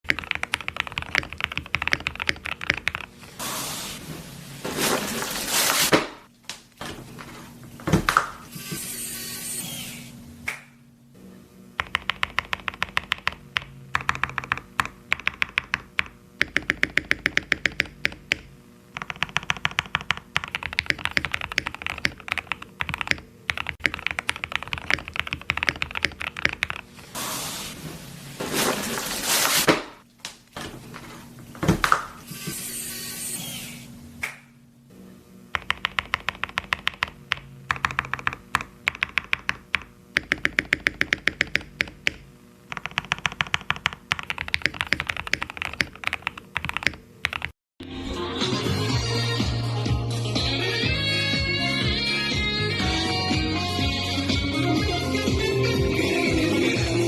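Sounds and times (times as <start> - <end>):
mechanical keyboard typing: 0.0 - 3.2, 11.8 - 26.9, 35.5 - 47.6
hissing noise: 3.4 - 6.0, 27.0 - 29.7.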